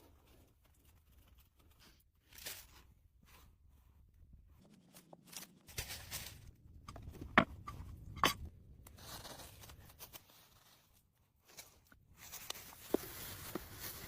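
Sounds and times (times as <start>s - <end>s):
dry plant material rustling: 4.6s - 6.6s, 9.0s - 14.0s.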